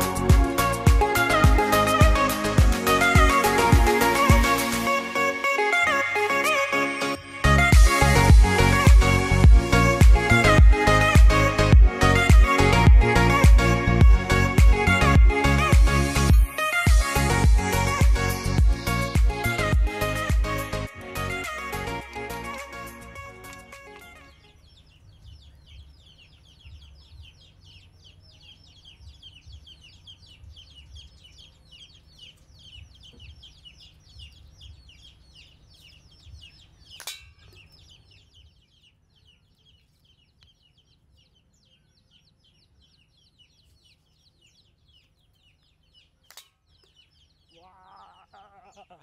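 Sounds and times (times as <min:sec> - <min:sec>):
rapid high-pitched chirping: 0:24.2 - 0:49.0.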